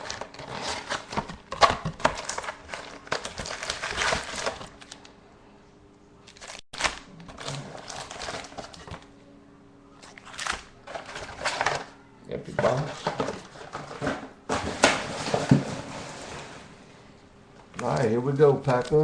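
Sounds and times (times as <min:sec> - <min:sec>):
packaging crinkling and rustling: 0:00.0 - 0:05.1, 0:06.2 - 0:09.1, 0:10.0 - 0:11.9, 0:17.8 - 0:19.0.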